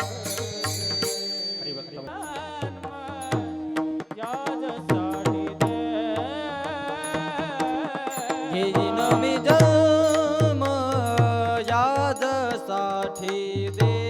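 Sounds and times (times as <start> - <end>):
cymbal clinks: 0.0 - 3.4.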